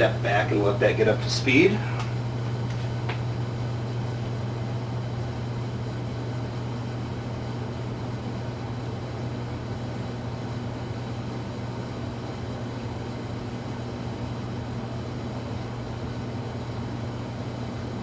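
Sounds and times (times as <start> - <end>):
ceiling fan motor hum: 0.0 - 18.0
fan air rushing: 0.0 - 18.0.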